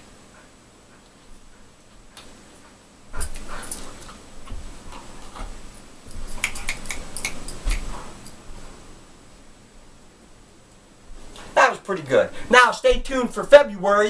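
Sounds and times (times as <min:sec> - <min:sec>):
dog claws clicking and tapping: 0:06.1 - 0:08.4.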